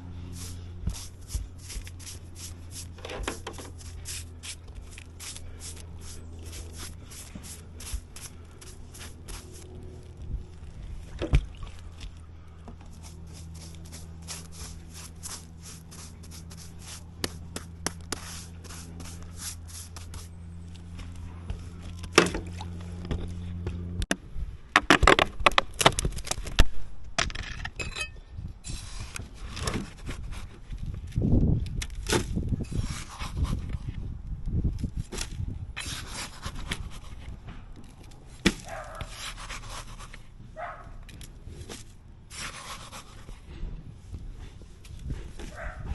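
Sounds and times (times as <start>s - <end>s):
steady low hum: 0.0s - 24.8s
scraping and clicking on roofing: 2.8s - 4.0s.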